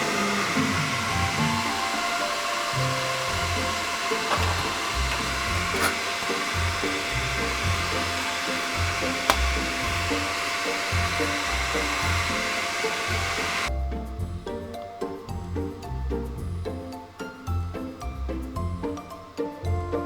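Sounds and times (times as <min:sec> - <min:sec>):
blower rushing air: 0:00.0 - 0:13.7
music with rhythmic bass line: 0:02.8 - 0:05.8, 0:08.8 - 0:10.3, 0:13.2 - 0:20.0.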